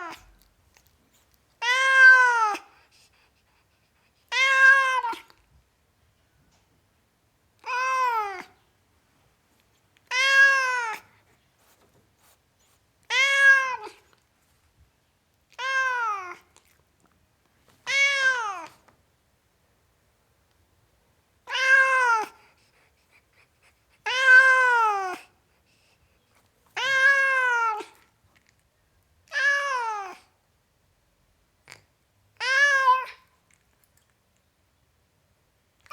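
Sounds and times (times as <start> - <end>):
cat meowing: 1.6 - 2.6, 4.3 - 5.4, 7.6 - 8.6, 10.0 - 11.1, 13.1 - 14.0, 15.5 - 16.5, 17.8 - 18.8, 21.5 - 22.4, 24.0 - 25.2, 26.8 - 28.0, 29.3 - 30.3, 32.4 - 33.3.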